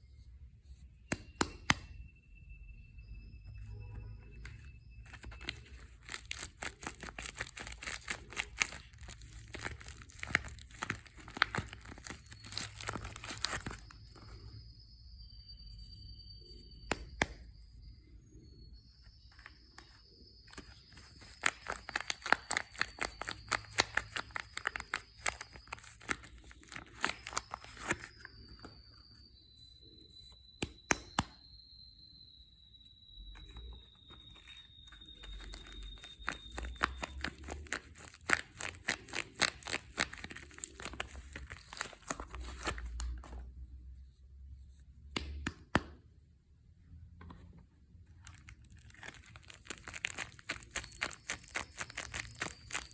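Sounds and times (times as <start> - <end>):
faint high whine: 0.0 - 45.0
wrapper crinkling and tearing: 5.0 - 14.2, 20.5 - 28.3, 34.3 - 43.2, 48.2 - 52.9.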